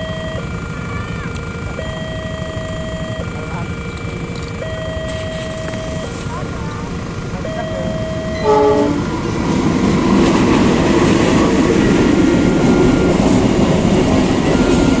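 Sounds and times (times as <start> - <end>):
train rumbling on rails: 0.0 - 15.0
train horn: 8.2 - 9.2.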